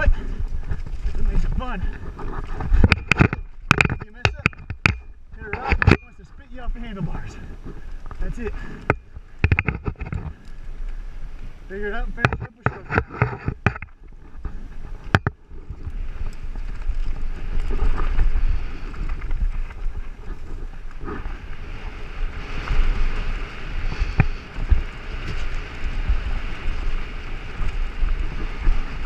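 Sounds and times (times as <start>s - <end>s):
mountain bike rattling over rocks: 0.0s - 10.9s, 11.7s - 29.0s
wind buffeting microphone: 0.0s - 29.0s
sharp knocks from bike: 2.7s - 6.0s.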